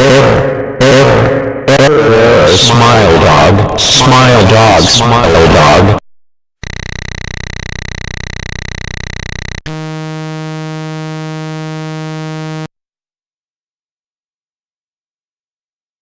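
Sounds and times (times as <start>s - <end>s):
low buzzing drone: 6.6s - 12.7s
pulsing electronic buzz: 6.6s - 12.7s.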